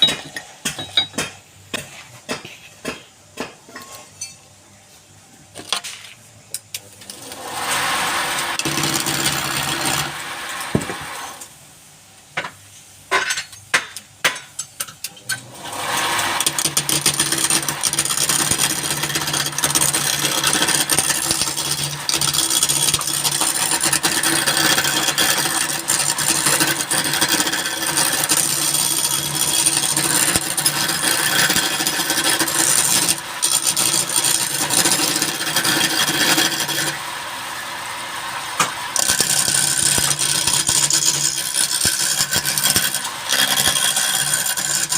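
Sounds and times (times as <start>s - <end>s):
woodworking machine humming: 7.0s - 11.5s, 15.4s - 44.9s
tool rasping against wood: 7.3s - 11.3s, 15.7s - 37.0s, 38.6s - 44.9s.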